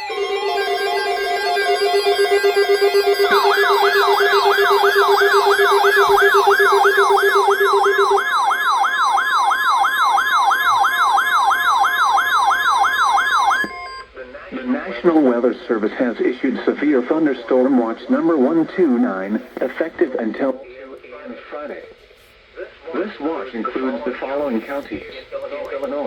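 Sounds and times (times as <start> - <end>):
fast yelp siren: 0.0 - 14.1
pulsing siren tone: 0.0 - 14.1
warbling siren tone: 0.0 - 14.1.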